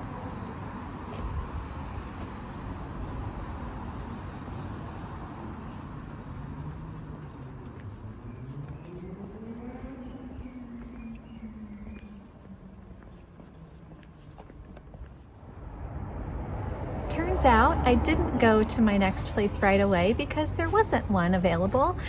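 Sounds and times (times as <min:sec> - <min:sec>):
traffic rumble: 0:00.0 - 0:22.0
vehicle engine pulling away: 0:15.4 - 0:22.0.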